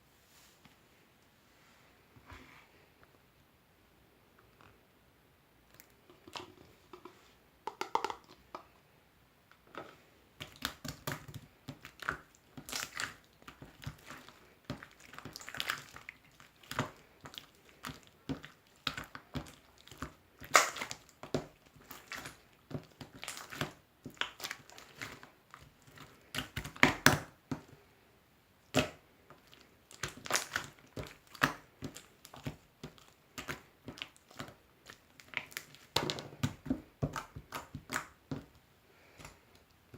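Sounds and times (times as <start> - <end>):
slime crackling and popping: 10.4 - 27.4, 28.7 - 38.5.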